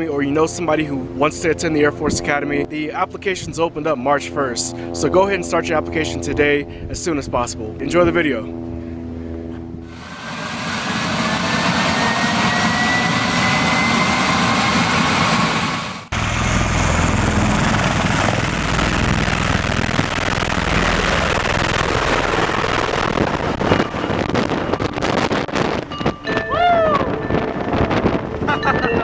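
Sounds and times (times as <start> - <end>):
rushing engine noise: 9.1 - 29.0
faint rising whine: 9.4 - 26.2.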